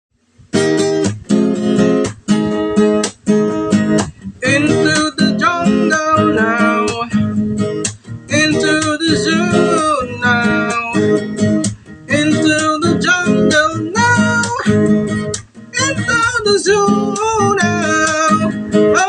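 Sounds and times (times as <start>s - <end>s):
strummed acoustic guitar chords: 0.2s - 19.0s.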